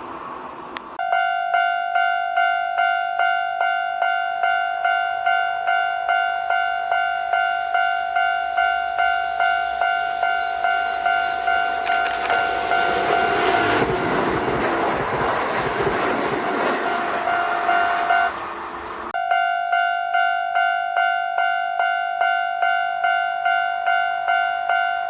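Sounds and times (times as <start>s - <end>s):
electric train rushing past: 0.0s - 19.8s.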